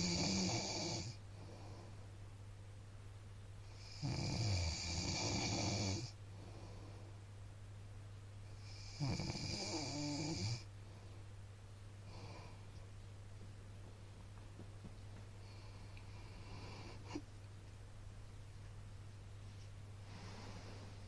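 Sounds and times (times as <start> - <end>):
man snoring: 0.0 - 1.2, 3.8 - 6.2, 8.6 - 10.7
steady low hum: 0.0 - 21.0.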